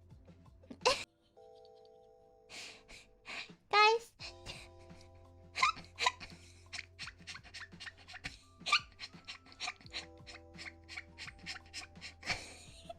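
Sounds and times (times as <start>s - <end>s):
soft background music: 0.0s - 12.9s
person making squeaky mouth noises: 5.6s - 12.4s.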